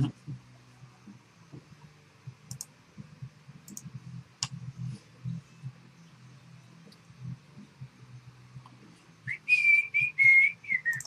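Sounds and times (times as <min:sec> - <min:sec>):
computer mouse clicks: 0:02.5 - 0:02.7, 0:03.6 - 0:04.6.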